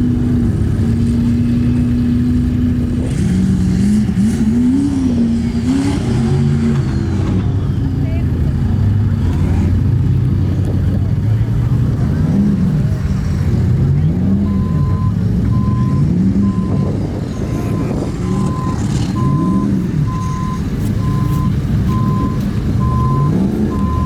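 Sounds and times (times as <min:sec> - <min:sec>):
off-road vehicle engine revving: 0:00.0 - 0:24.0
reversing alarm beeping: 0:14.4 - 0:24.0.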